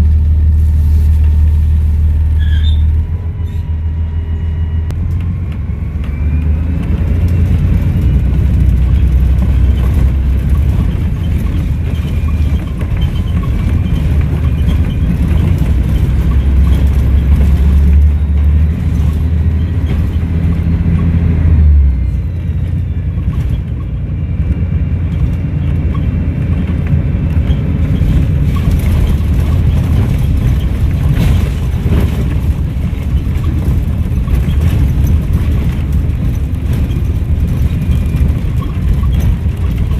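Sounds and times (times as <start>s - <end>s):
bus engine drone: 0.0s - 39.9s
high turbo whistle: 2.4s - 4.9s.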